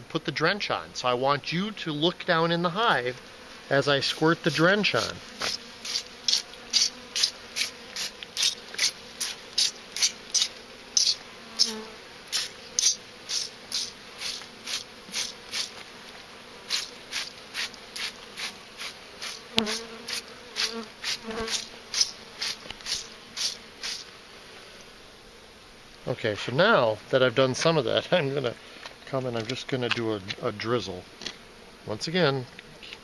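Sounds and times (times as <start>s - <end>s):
honeybees buzzing: 0.4s - 33.0s
spray bottle squirting: 5.0s - 15.8s, 16.7s - 24.1s.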